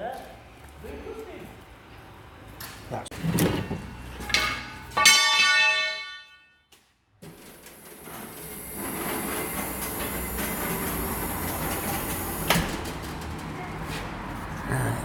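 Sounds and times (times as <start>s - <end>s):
steel struck with metallic clang: 4.2s - 6.5s.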